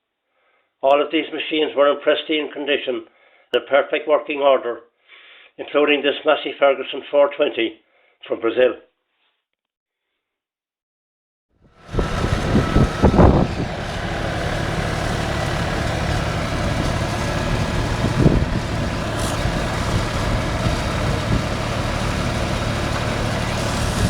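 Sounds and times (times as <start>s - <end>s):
tractor engine humming: 11.8s - 24.0s.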